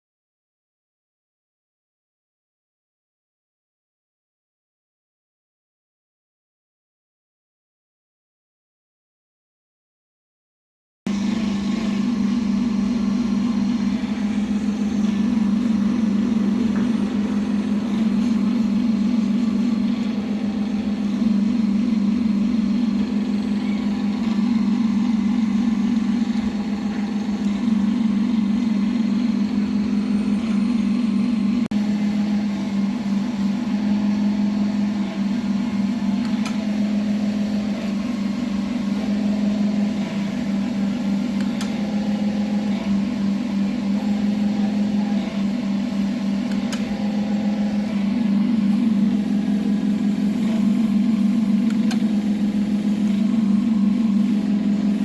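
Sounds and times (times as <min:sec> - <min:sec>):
machine tool humming: 0:11.1 - 0:55.0.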